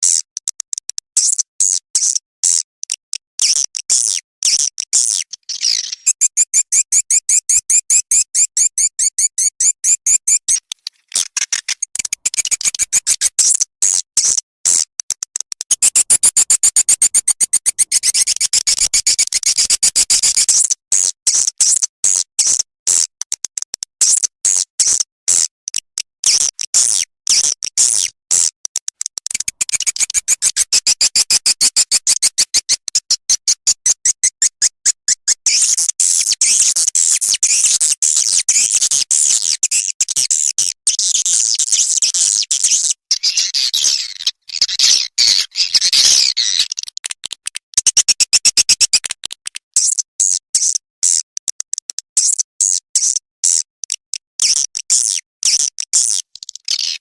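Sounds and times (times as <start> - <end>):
swiftlet chirps and twitters: 4.4 - 10.6, 11.2 - 13.6, 15.7 - 20.6, 29.3 - 47.0, 47.8 - 49.1, 54.4 - 57.0
swiftlet trilling: 15.7 - 19.0.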